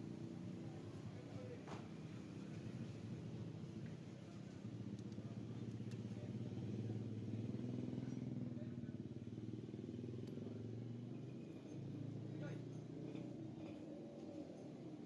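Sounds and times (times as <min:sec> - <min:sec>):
motorcycle engine idling: 0:00.0 - 0:11.2.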